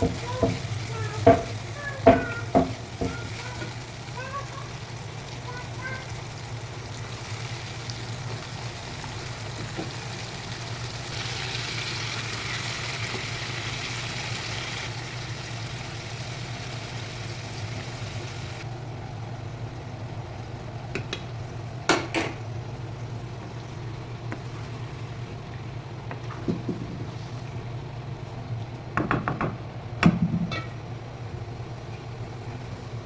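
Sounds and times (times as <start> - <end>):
utensil knocking against pan: 0.0 - 3.3, 29.0 - 30.8
food sizzling in a pan: 0.0 - 18.7.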